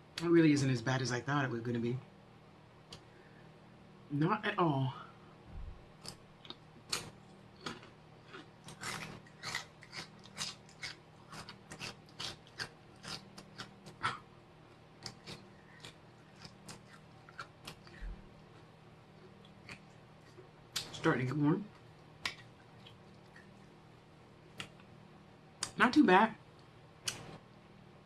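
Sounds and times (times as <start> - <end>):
corn chips crunching: 6.0 - 14.0
soft chewing: 6.0 - 21.0, 21.7 - 25.0.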